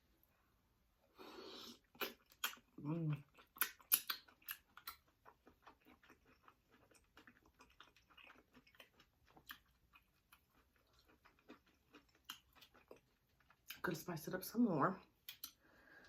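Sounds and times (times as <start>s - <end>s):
person chewing with mouth clicks: 1.6s - 13.8s, 15.2s - 15.6s.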